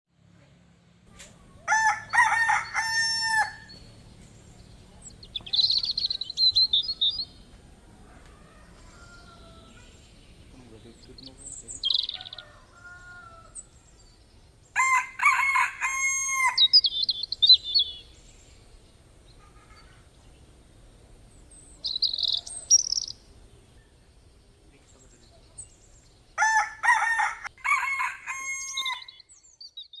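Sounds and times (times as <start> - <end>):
small birds chirping: 0.2 - 30.0
rooster crowing: 1.6 - 3.8, 7.5 - 9.9, 12.0 - 13.7, 14.7 - 16.8, 26.4 - 29.2.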